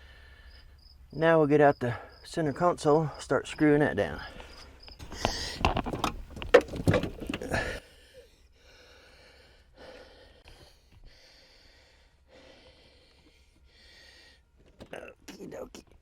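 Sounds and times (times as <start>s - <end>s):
car interior parts clicking: 5.0s - 7.8s.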